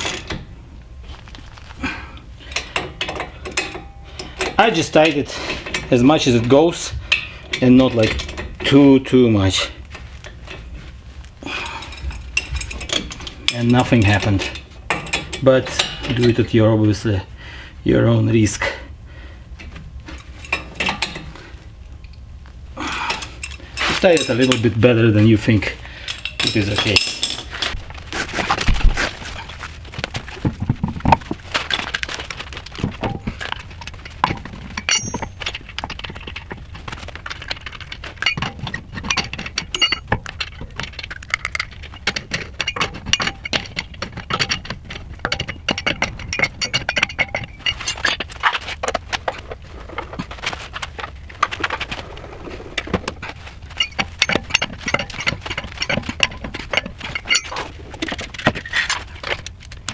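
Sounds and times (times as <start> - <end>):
metallic clicks of hand tools: 37.3 - 48.2.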